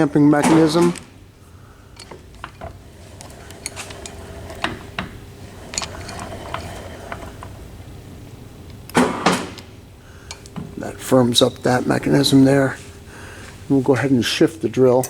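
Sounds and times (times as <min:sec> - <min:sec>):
machine humming: 0:00.0 - 0:15.0
metallic clicks and clanks: 0:02.0 - 0:07.6.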